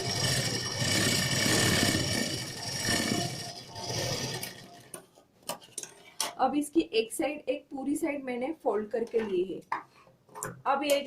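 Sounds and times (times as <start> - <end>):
electric sewing machine stitching: 0.0 - 5.0.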